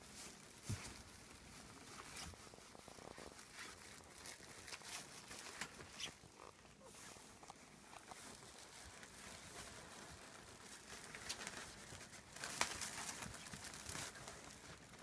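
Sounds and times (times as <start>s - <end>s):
puppies pattering and rustling: 0.0s - 15.0s.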